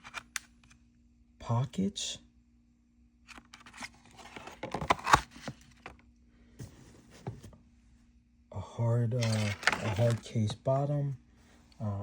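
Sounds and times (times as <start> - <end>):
tool bag rustling: 9.2 - 10.3.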